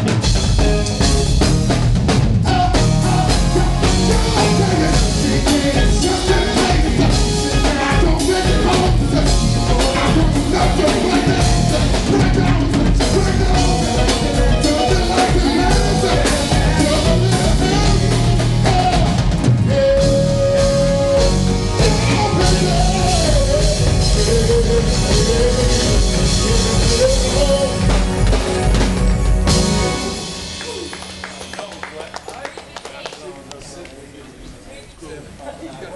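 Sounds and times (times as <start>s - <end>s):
drum kit: 0.0s - 31.9s
live band music: 0.0s - 33.6s
person singing: 2.4s - 28.2s.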